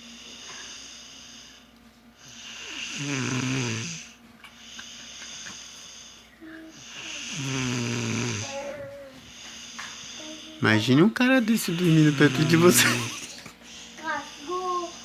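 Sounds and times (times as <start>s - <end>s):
person snoring deeply: 2.3s - 4.1s, 6.8s - 9.4s.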